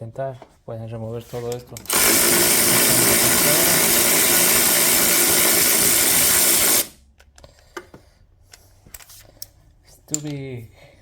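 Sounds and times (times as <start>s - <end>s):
power tool motor running: 1.9s - 7.0s.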